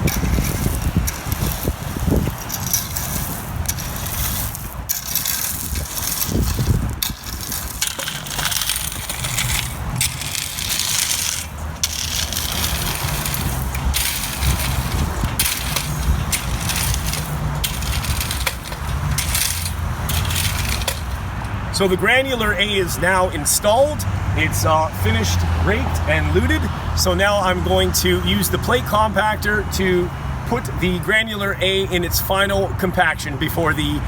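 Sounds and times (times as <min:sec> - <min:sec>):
rake scraping through gravel: 0:00.0 - 0:23.6.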